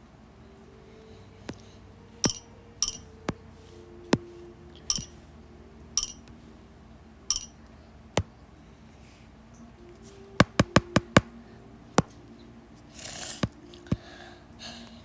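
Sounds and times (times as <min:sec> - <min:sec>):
sharp glassy clicks and clinks: 0:02.2 - 0:03.0, 0:04.9 - 0:05.2, 0:06.0 - 0:06.2, 0:07.3 - 0:07.6.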